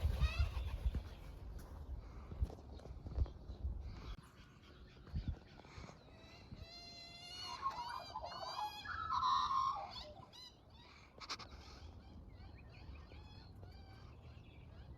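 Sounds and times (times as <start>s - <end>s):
young bird whining begging calls: 6.5s - 11.6s.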